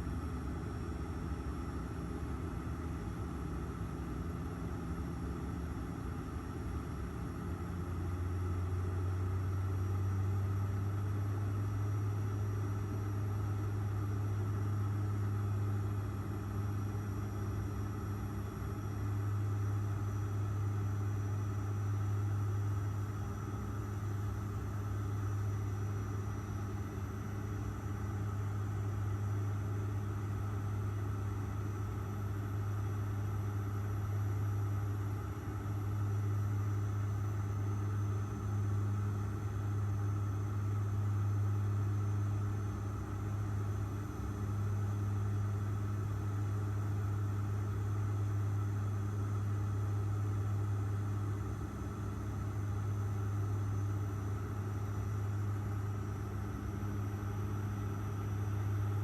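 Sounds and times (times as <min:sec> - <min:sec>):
airliner engine drone: 0:12.4 - 0:59.0.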